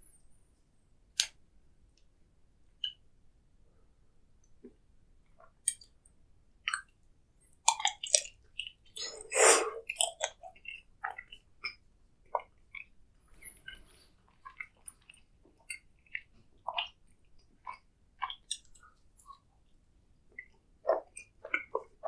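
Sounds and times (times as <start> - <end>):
close chewing with mouth clicks: 7.6 - 19.5, 20.3 - 22.0.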